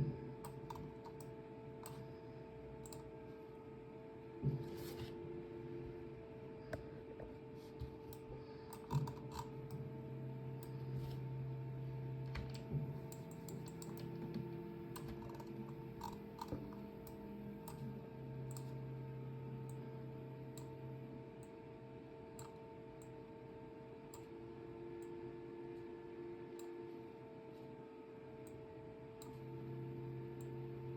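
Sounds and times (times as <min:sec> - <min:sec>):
steady electrical hum: 0:00.0 - 0:30.9
keyboard and mouse clicks: 0:02.8 - 0:03.1, 0:08.1 - 0:09.8, 0:12.4 - 0:17.8.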